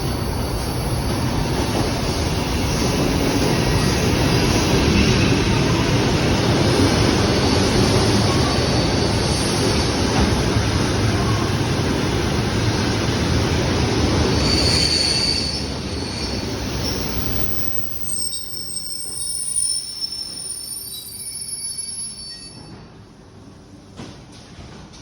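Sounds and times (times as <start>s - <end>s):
train rail noise: 0.0s - 25.0s
high wheel squeals: 14.4s - 22.8s.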